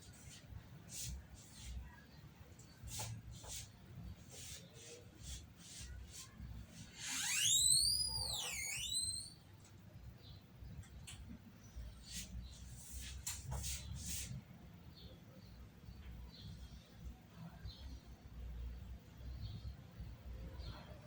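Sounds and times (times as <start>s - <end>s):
high sweeping whistling tone: 7.0s - 9.4s.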